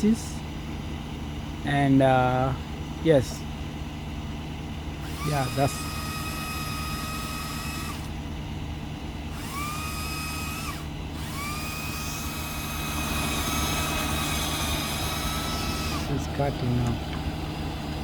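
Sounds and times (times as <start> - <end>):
truck engine idling: 0.0 - 18.0
chainsaw cutting a branch: 5.2 - 8.1.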